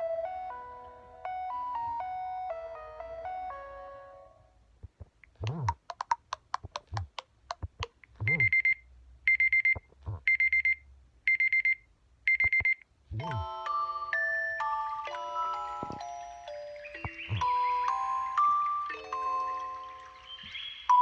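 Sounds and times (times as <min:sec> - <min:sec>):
melodic phone tone: 0:00.0 - 0:04.2, 0:13.2 - 0:20.3
sharp clicks: 0:04.9 - 0:08.5
quick high alarm beeps: 0:08.2 - 0:13.4.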